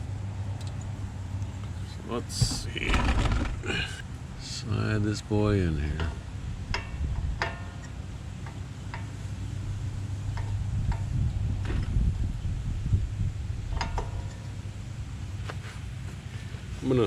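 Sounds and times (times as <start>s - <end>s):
low rumble: 2.2s - 4.5s.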